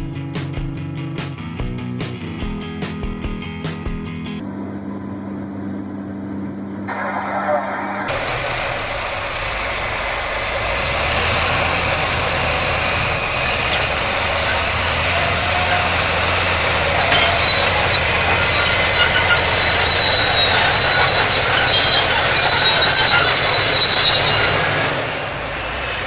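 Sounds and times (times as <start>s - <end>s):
diesel machinery engine rumbling: 0.0s - 26.0s
thin high squeal: 14.4s - 24.8s.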